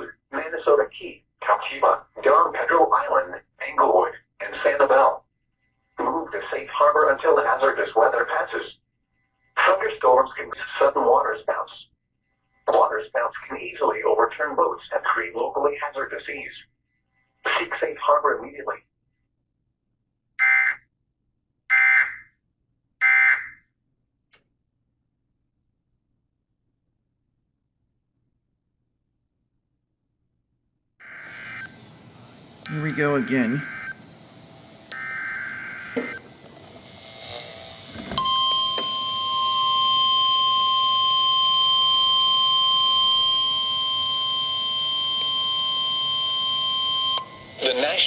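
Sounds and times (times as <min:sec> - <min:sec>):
screeching digital data tones: 0:31.0 - 0:31.8
steady alarm tone: 0:31.0 - 0:31.9, 0:32.6 - 0:36.3, 0:37.4 - 0:47.6.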